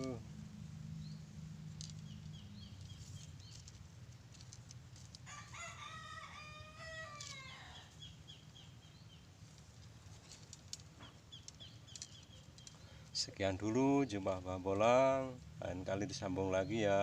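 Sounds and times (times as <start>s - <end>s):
faint rooster crowing: 5.2s - 8.0s.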